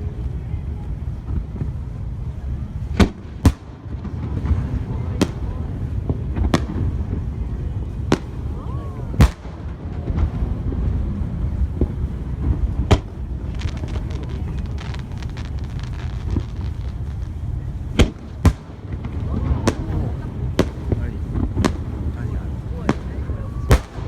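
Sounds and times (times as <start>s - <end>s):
fine fireworks crackling: 0.0s - 24.0s
low rumble: 0.0s - 24.0s
fireworks bangs: 1.1s - 24.0s.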